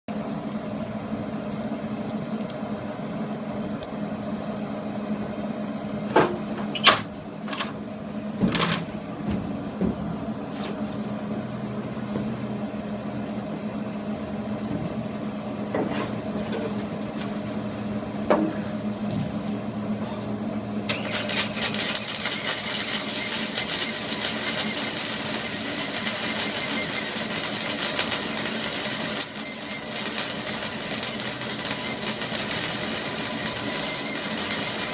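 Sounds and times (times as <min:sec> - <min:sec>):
machine hum: 0:00.1 - 0:34.9
loud steady hiss: 0:20.9 - 0:34.9.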